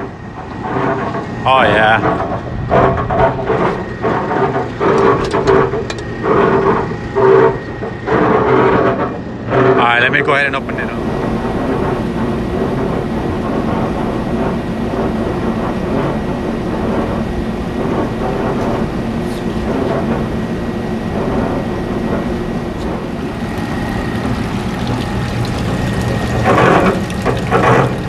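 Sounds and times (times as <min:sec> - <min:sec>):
exhaust fan rumble: 0:09.8 - 0:28.0
high whine: 0:10.4 - 0:28.0.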